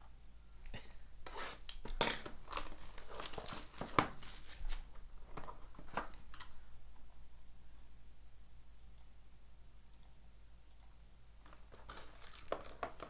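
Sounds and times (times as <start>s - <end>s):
wrapper tearing and crinkling: 2.4s - 4.9s, 11.7s - 13.0s.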